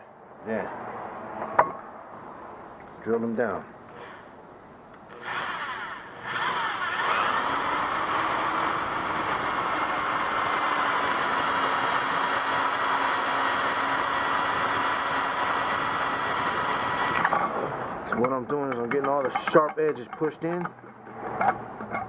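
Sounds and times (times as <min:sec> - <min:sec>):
power drill boring through metal: 0:03.9 - 0:04.3, 0:05.1 - 0:19.6.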